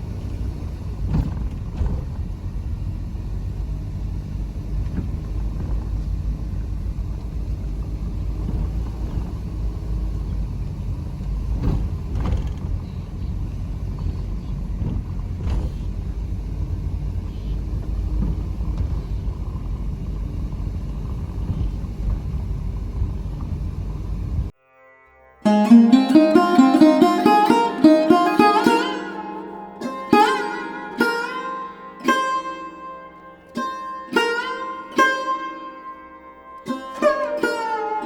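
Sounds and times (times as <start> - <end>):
car road and engine rumble: 0.0 - 24.5.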